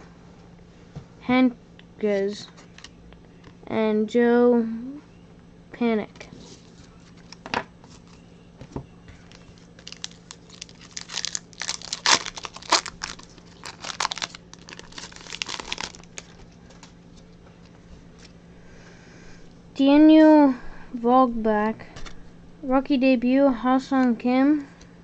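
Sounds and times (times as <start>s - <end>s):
foil pack crinkling and tearing: 9.2s - 17.0s.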